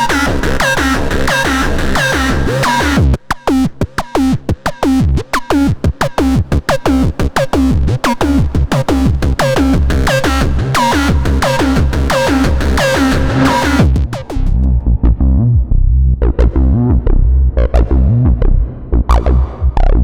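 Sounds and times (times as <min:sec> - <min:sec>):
pulsing bass: 0:00.0 - 0:03.2, 0:04.2 - 0:20.0
drum machine beat: 0:03.8 - 0:14.7.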